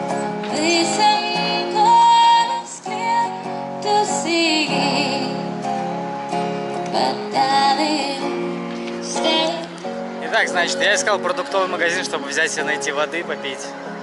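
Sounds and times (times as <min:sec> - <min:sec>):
guitar: 0:00.0 - 0:14.0
woman singing: 0:00.5 - 0:05.6, 0:06.8 - 0:09.8.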